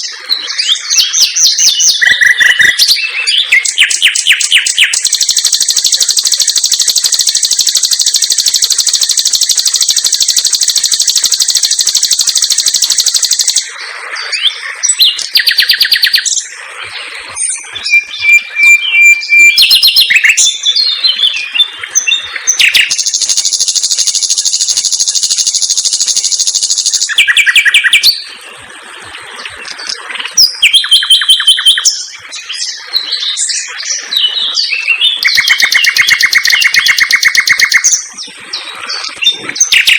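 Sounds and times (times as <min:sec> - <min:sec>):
nightingale singing trills: 0:00.0 - 0:16.6, 0:17.3 - 0:28.4, 0:29.6 - 0:39.9.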